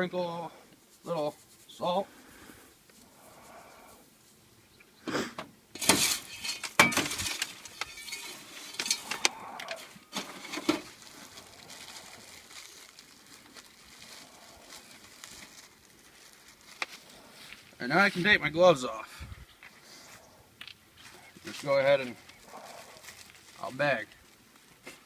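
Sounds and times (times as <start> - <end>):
popcorn rustling: 5.8 - 18.4, 21.0 - 25.0.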